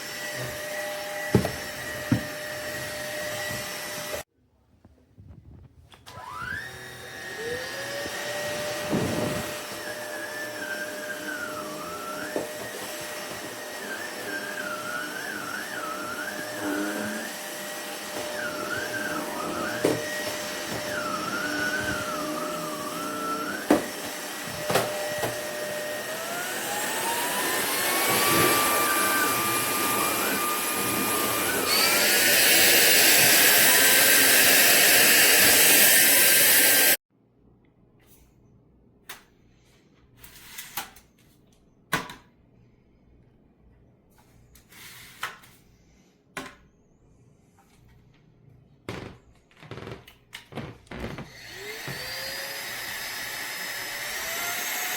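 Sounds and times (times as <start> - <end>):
stick vacuum motor whining: 6.1 - 37.0, 49.7 - 54.9.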